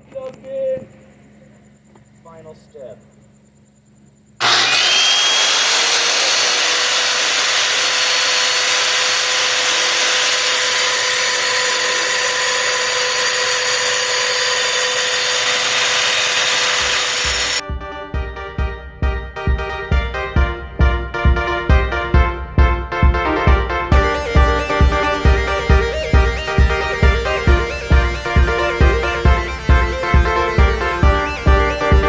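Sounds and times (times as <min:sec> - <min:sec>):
rock saw whining: 0:04.4 - 0:17.6, 0:23.9 - 0:32.0.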